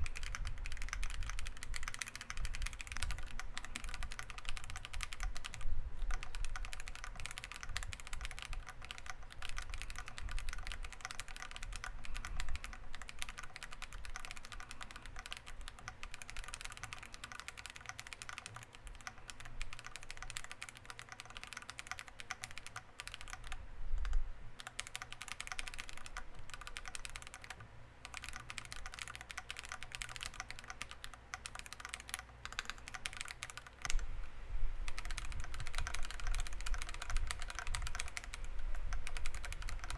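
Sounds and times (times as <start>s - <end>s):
mechanical keyboard typing: 0.0s - 34.1s, 34.8s - 39.9s.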